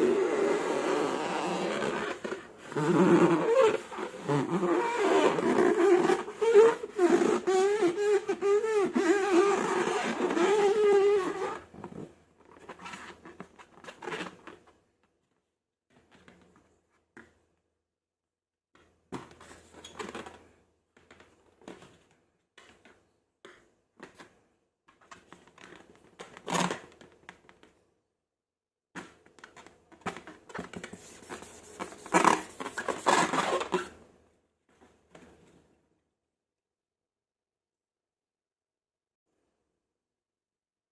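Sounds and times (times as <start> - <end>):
rubber balloon squealing: 0.0 - 11.6.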